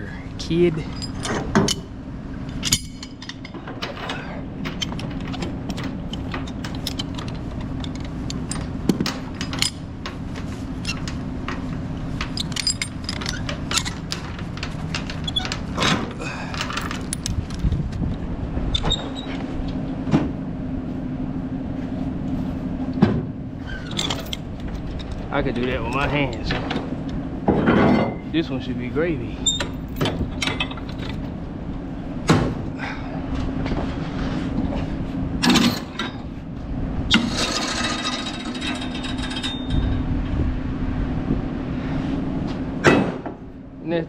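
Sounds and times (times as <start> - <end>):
engine hum: 0.0 - 44.0
metal chain clinking: 0.8 - 1.9, 2.5 - 10.2, 10.8 - 17.7, 23.7 - 26.6, 37.4 - 40.0.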